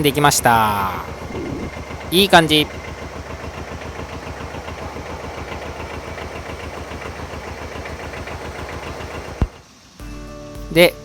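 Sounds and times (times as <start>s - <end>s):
tractor engine running: 0.0s - 9.6s.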